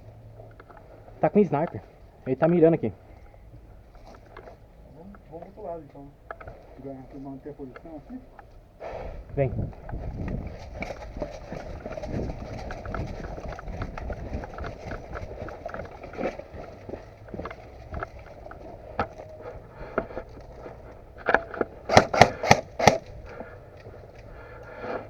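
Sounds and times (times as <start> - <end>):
rustling movement: 0.1 - 25.0
airsoft gun firing: 21.9 - 23.2.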